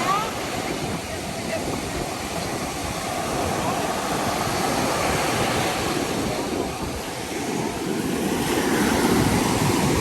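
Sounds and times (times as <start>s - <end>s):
sea waves washing ashore: 0.0s - 10.0s
wind on microphone: 0.0s - 10.0s.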